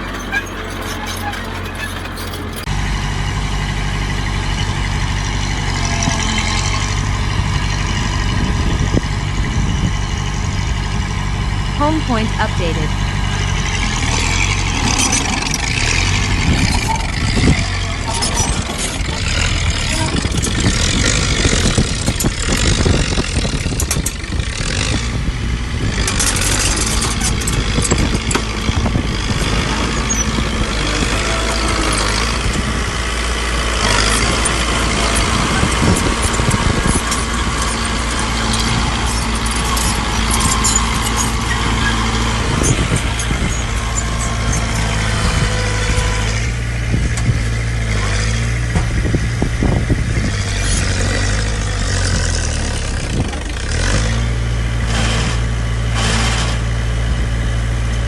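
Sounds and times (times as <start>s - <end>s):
metal clanks and rattles: 0.0s - 2.8s, 14.0s - 25.0s, 33.8s - 49.2s
heavy diesel machinery droning: 0.0s - 58.0s.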